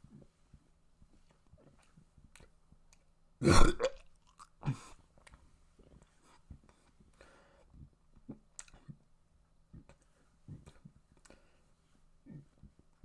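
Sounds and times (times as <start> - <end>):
soft low mouth sounds: 1.3 - 9.1, 9.7 - 11.6, 12.2 - 13.0
mouth clicks and smacks: 1.6 - 5.4, 6.0 - 9.1, 9.7 - 11.4.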